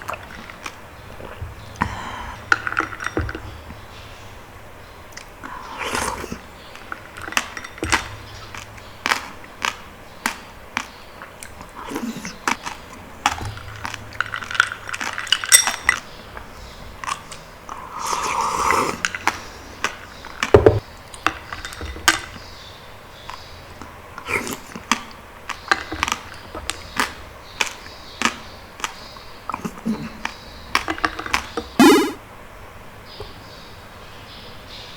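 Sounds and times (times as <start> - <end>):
utensil clinking on dishware: 0.0 - 3.8, 12.0 - 16.4
wet mouth sounds: 0.0 - 4.2, 5.1 - 20.8, 23.8 - 32.2.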